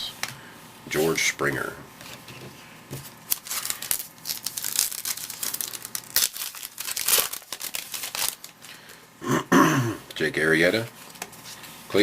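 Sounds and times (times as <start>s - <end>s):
plastic wrapper crinkling and ripping: 3.2s - 9.0s.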